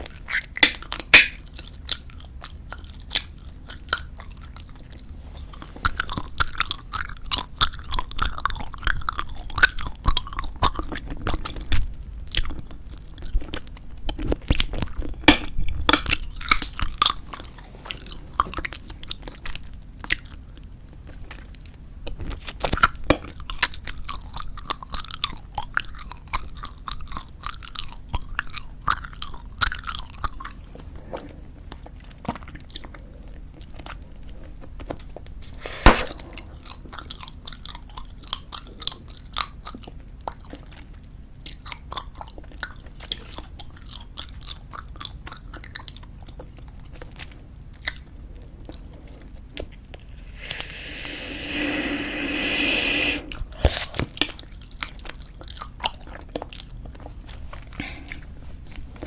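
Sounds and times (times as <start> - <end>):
chewing bubble gum: 0.0 - 59.0.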